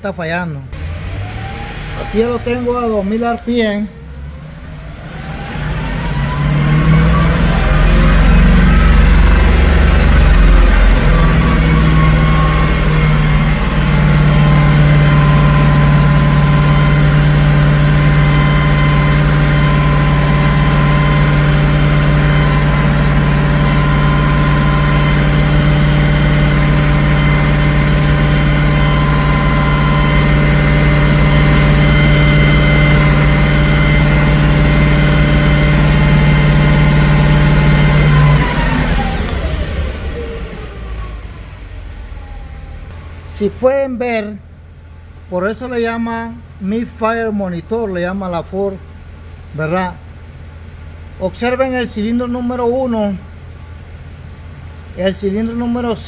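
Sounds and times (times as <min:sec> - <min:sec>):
engine running at steady revs: 0:00.7 - 0:43.6.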